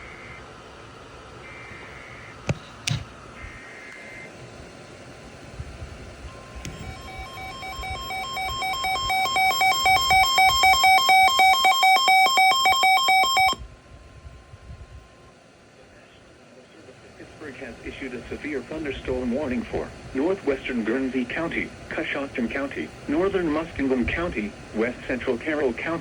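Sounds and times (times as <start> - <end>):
sharp clicks: 2.5 - 3.1
steady warning alarm tone: 6.3 - 13.6
loud pulsing electronic beep: 6.7 - 13.6
warbling data tones: 6.7 - 13.6.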